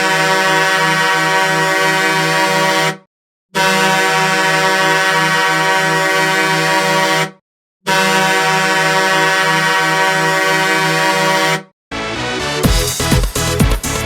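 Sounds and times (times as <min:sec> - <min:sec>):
goal horn blasts: 0:00.0 - 0:03.0, 0:03.6 - 0:11.7.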